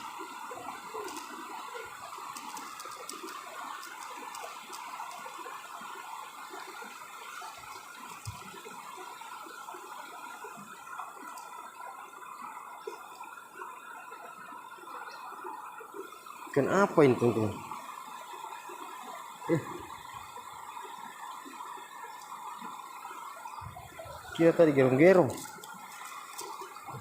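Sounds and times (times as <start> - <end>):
river water running: 0.0 - 27.0
faint clicks: 2.2 - 5.3.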